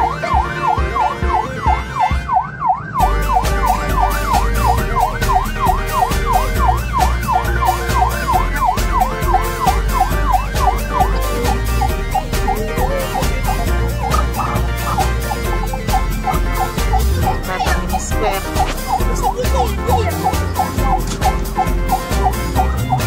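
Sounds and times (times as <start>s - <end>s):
siren in fast yelp: 0.0s - 21.0s
steady run of clicks: 3.4s - 23.0s.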